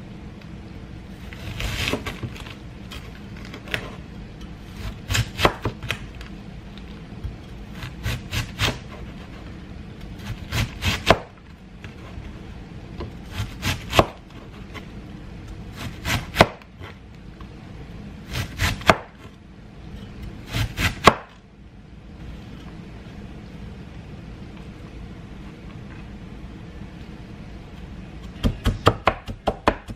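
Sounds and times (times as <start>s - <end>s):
low steady hum: 0.0s - 29.9s
knife chopping on wooden board: 4.8s - 6.0s, 10.2s - 11.4s, 13.0s - 14.2s, 15.8s - 16.9s, 18.3s - 19.3s, 20.5s - 21.4s, 28.2s - 29.9s.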